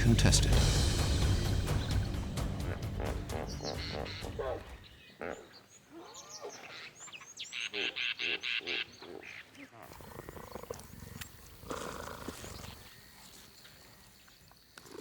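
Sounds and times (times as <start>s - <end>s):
loud high calls: 0.6s - 5.5s
cheetahs growling: 2.6s - 5.5s, 9.8s - 12.9s.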